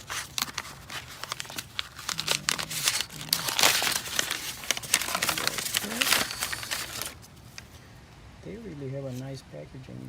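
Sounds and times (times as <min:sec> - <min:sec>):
plastic packaging crinkling: 0:00.0 - 0:07.7.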